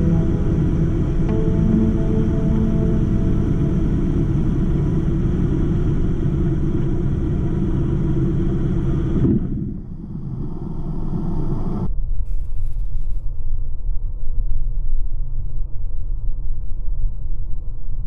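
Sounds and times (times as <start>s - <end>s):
small plane engine rumble: 0.0s - 11.9s.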